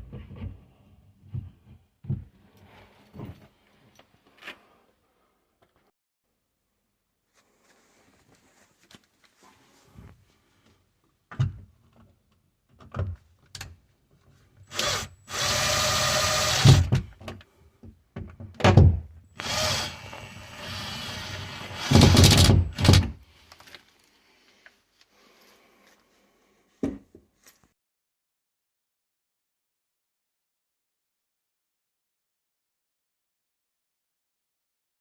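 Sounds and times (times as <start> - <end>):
power drill running: 14.7 - 16.9, 19.4 - 23.0
tools knocking and thunking: 16.8 - 19.1, 26.8 - 27.3.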